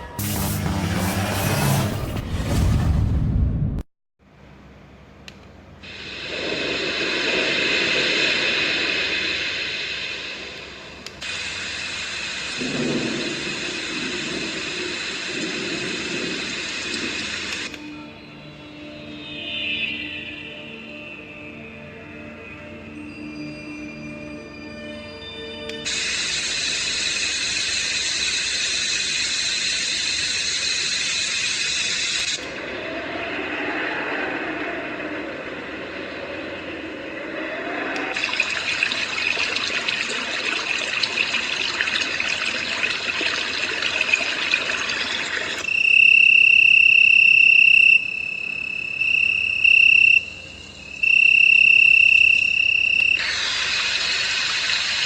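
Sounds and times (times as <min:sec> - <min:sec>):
white noise machine hiss: 0:04.3 - 0:17.7, 0:25.9 - 0:37.5.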